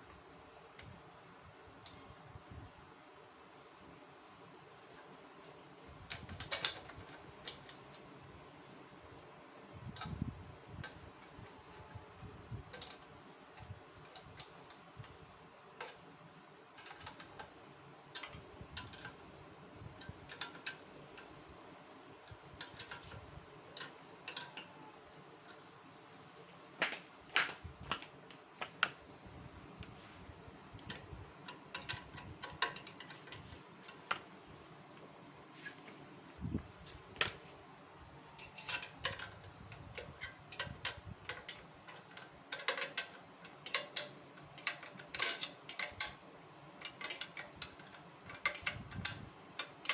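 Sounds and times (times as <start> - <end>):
faint steady hum: 0.0 - 49.9
hand tools clicking on metal: 20.0 - 21.4, 22.3 - 24.8, 30.8 - 34.2, 38.4 - 46.2, 46.8 - 49.9.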